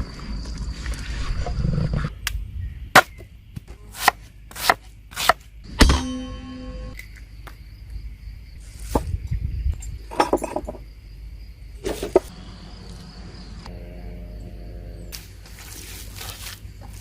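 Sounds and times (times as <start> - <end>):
high insect trill: 6.9 - 17.0
sharp clinks and knocks: 9.7 - 10.9.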